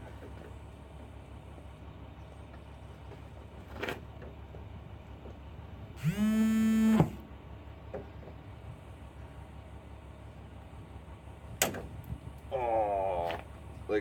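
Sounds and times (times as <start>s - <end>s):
low steady hum: 0.0s - 14.0s
loud steady whine: 6.0s - 7.3s.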